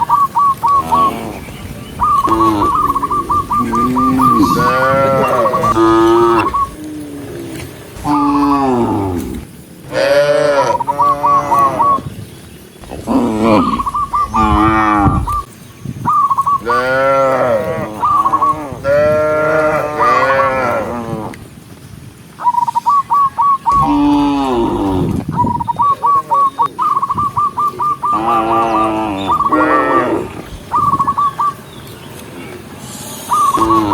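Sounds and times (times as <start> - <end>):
cattle mooing: 2.1 - 12.0, 12.8 - 15.5, 16.6 - 21.4, 23.7 - 25.2, 28.1 - 30.4.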